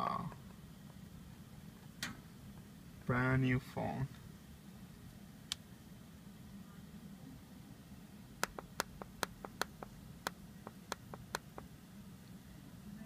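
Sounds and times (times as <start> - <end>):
phone button clicking: 8.4 - 11.7.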